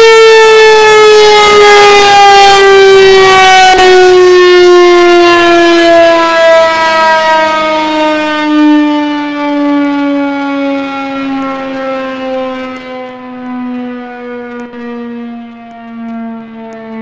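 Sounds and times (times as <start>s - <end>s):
warning siren winding down: 0.0s - 17.0s.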